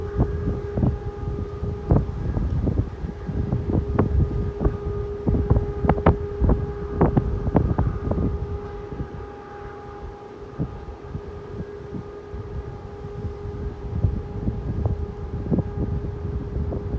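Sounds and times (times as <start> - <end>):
steady humming tone: 0.0 - 16.9
strong wind buffeting microphone: 0.0 - 16.9.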